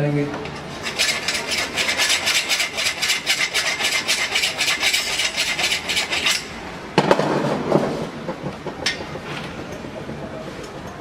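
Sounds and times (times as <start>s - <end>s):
file rasping on copper pipe: 0.6s - 6.6s.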